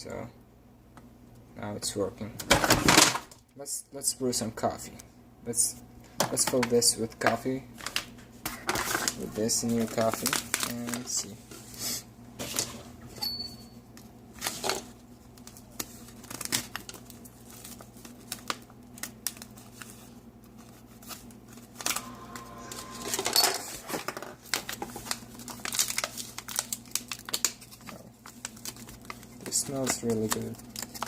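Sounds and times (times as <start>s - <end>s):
coffee bag crinkling and rustling: 6.3s - 11.4s, 14.3s - 22.6s, 23.2s - 31.0s.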